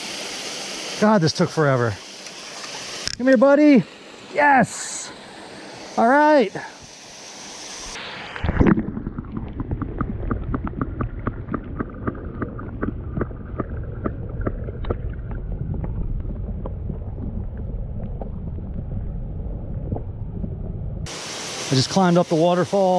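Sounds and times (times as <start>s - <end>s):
rushing water: 0.0s - 19.1s, 21.0s - 22.9s
wind buffeting microphone: 9.4s - 21.1s.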